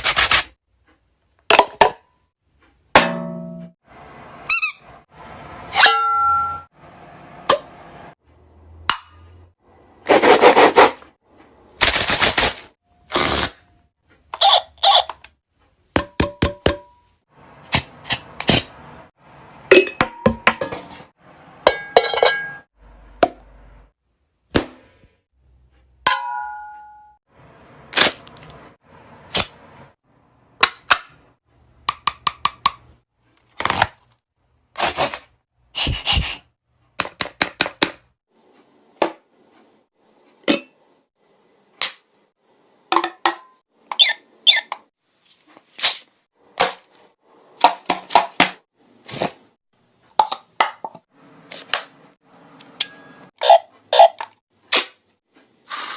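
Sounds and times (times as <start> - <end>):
ringing ding: 3.1 - 3.7, 5.8 - 6.7, 26.1 - 27.2.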